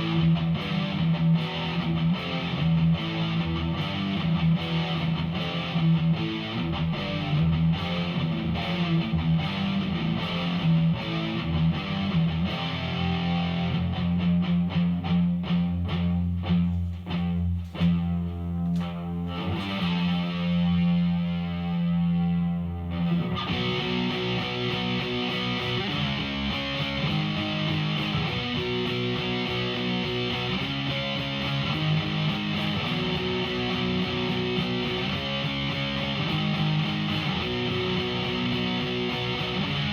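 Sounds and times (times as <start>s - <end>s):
distorted electric guitar riff: 0.0s - 39.9s.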